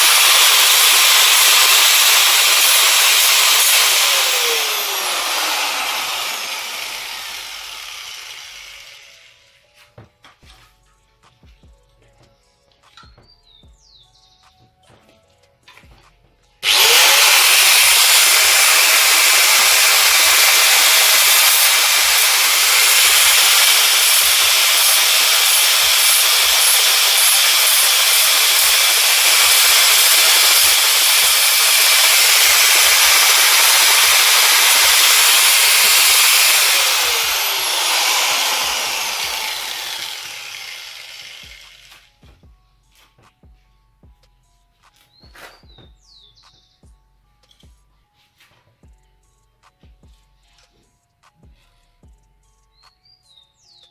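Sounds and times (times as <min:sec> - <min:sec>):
power sander on steel: 0:00.0 - 0:09.6, 0:16.6 - 0:42.2.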